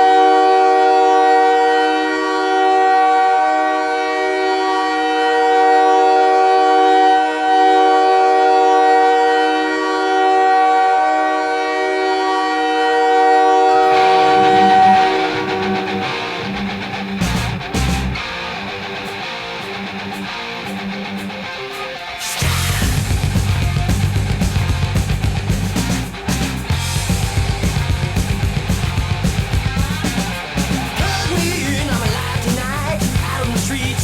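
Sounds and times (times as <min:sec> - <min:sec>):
goal horn blast: 0:13.4 - 0:17.6
rock music with electric guitar: 0:13.7 - 0:34.0.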